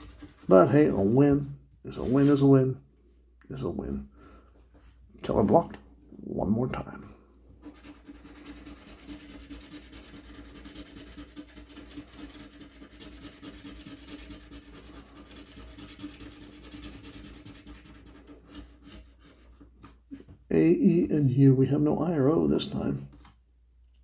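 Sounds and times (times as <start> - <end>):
scratch-off ticket being scratched: 0.0 - 0.9, 7.6 - 20.0.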